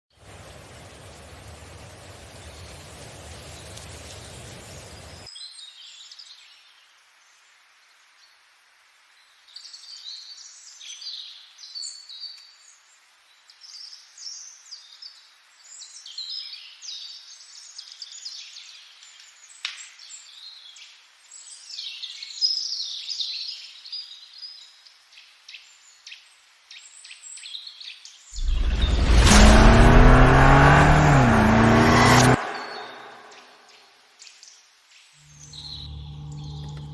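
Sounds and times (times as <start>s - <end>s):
steady hiss: 0.1s - 5.3s.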